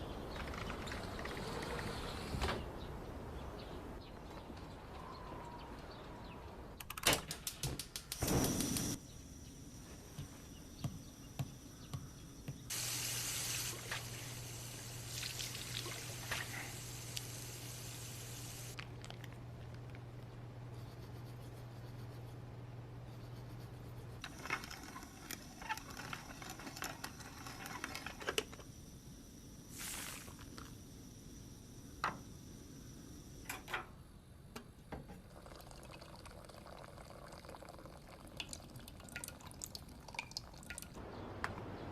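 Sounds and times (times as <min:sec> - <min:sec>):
water running from a tap: 0:12.7 - 0:18.8.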